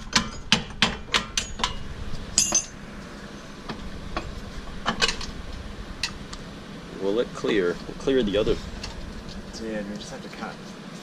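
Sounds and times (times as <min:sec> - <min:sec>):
hammer striking metal: 0:02.4 - 0:02.8.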